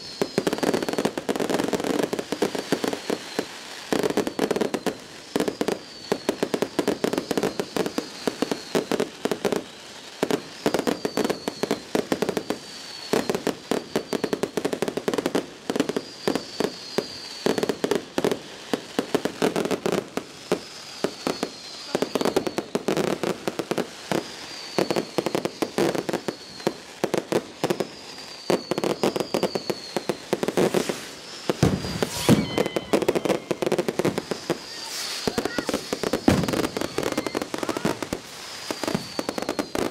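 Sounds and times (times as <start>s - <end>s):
falling whistle tones: 0.0s - 1.2s, 2.8s - 9.0s, 10.6s - 14.5s, 15.8s - 17.9s, 21.0s - 22.9s, 24.2s - 26.9s, 27.7s - 39.9s
fireworks bangs and crackling: 0.0s - 39.9s.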